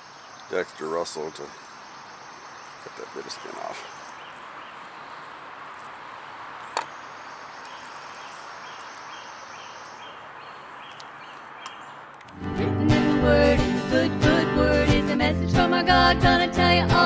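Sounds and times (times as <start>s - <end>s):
faint insect chirps: 0.0s - 12.2s
music: 12.4s - 17.0s.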